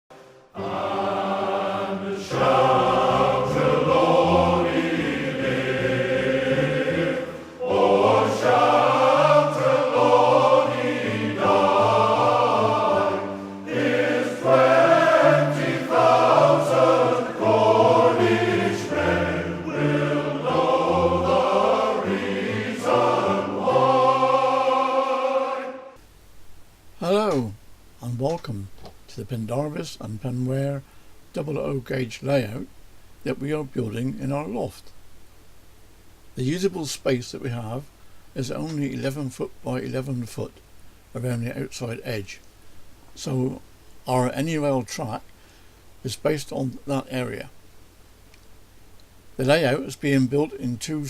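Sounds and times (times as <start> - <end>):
choir singing: 0.1 - 26.0.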